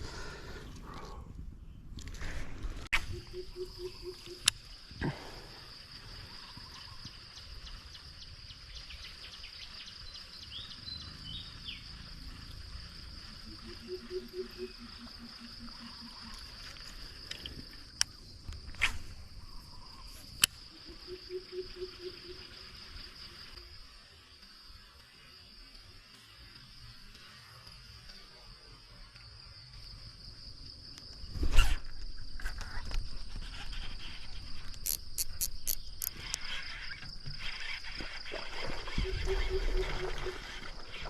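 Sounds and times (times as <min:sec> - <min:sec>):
low pulsing calls: 0:03.0 - 0:05.2, 0:13.2 - 0:16.7, 0:19.4 - 0:22.8, 0:33.3 - 0:41.0
high-pitched insect chorus: 0:03.0 - 0:41.0
sharp clicks: 0:34.6 - 0:36.4.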